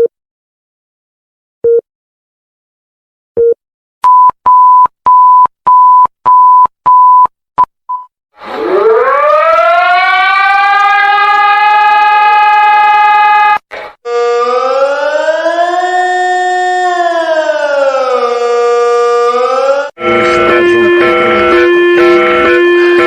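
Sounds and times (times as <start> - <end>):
civil defense siren wailing: 8.4 - 23.0
alert beeps: 20.0 - 23.0.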